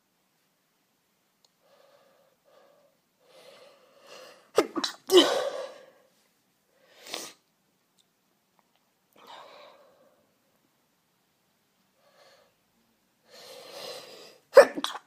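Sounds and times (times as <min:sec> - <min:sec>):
woman gasping breaths: 0:01.6 - 0:04.5, 0:13.2 - 0:14.5
woman sneezing: 0:04.6 - 0:05.8, 0:14.5 - 0:15.0
burst of breath: 0:13.3 - 0:14.5.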